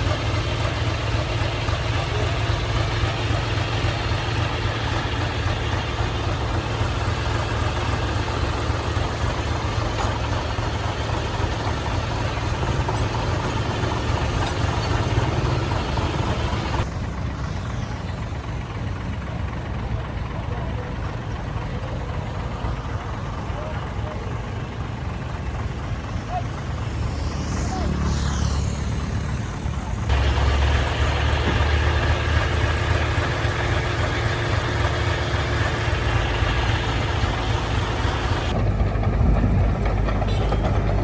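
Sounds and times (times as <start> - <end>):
diesel engine humming: 0.0 - 41.0.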